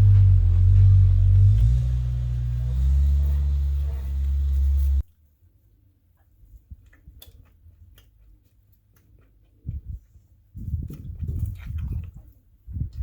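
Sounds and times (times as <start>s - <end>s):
ambient music with held bass: 0.0s - 5.0s.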